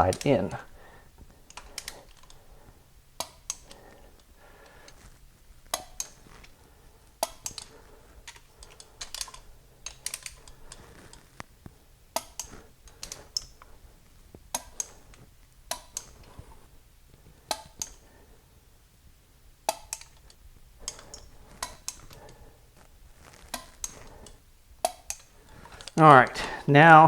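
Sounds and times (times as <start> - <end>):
torque wrench clicks: 5.7 - 6.2, 7.2 - 7.7, 12.2 - 13.6, 19.7 - 22.2, 24.8 - 26.0
tool and socket handling: 7.2 - 11.2.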